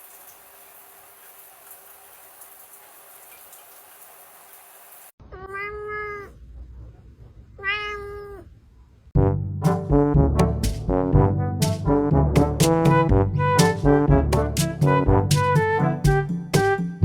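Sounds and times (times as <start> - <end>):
faint steady hiss: 0.0 - 5.1
cat meowing: 5.2 - 6.4, 7.6 - 8.5.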